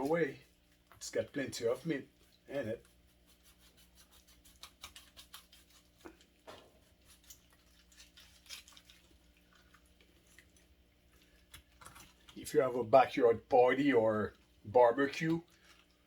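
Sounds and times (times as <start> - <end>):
knife cutting fish head: 3.3 - 6.2.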